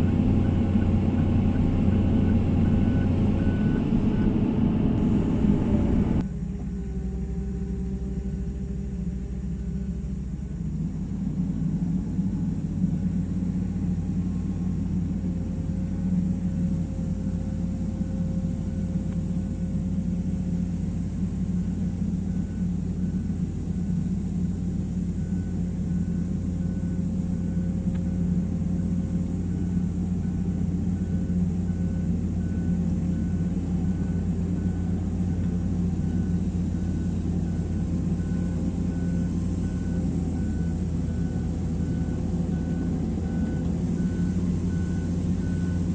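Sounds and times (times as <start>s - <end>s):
faint beeps: 0.0s - 5.9s, 21.4s - 45.9s
excavator diesel engine running: 0.0s - 45.9s.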